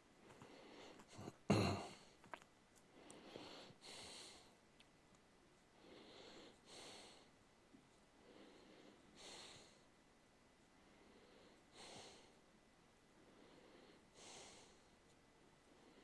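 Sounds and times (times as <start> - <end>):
person breathing slowly: 0.2 - 2.2, 2.8 - 4.6, 5.7 - 7.4, 8.1 - 9.9, 10.7 - 12.5, 13.1 - 15.0, 15.6 - 16.0.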